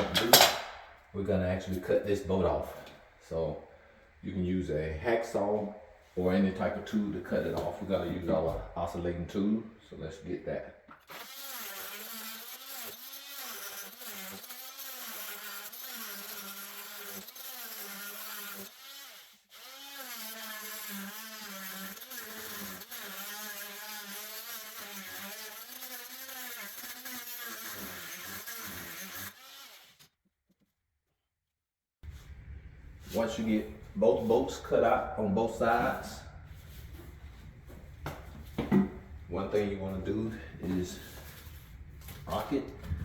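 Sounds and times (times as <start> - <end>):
multi-tool buzzing cutting bolt: 11.0 - 30.1.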